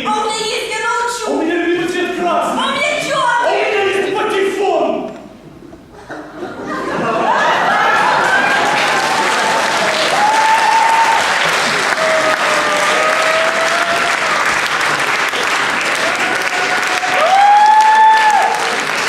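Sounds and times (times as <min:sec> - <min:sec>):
audience applauding: 0:07.0 - 0:19.0.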